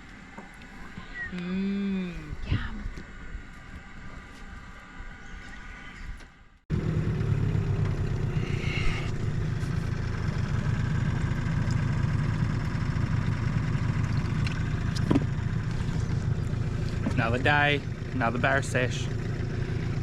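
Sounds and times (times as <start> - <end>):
outboard motor running: 6.7 - 20.0.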